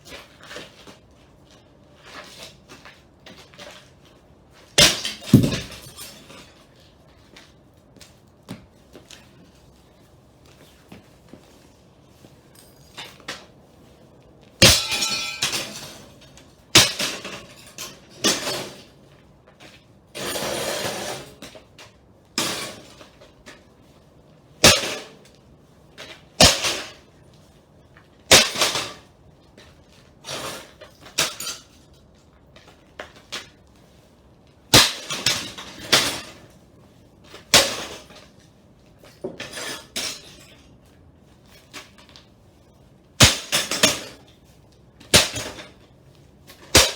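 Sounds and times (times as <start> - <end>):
hard blows smashing computer case: 4.8 - 6.2, 14.6 - 16.0, 16.8 - 17.6, 43.2 - 44.2
glass shards clinking and rattling: 4.8 - 6.5, 14.6 - 16.0.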